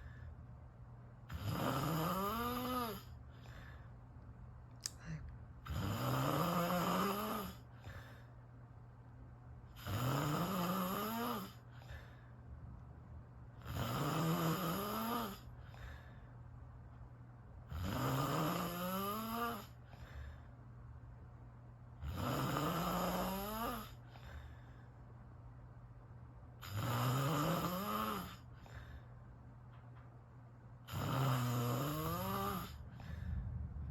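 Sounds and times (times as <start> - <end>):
person snoring loudly: 1.3 - 3.1, 5.7 - 7.6, 9.8 - 11.6, 13.6 - 15.5, 17.7 - 19.7, 22.0 - 24.0, 26.6 - 28.4, 30.9 - 32.8.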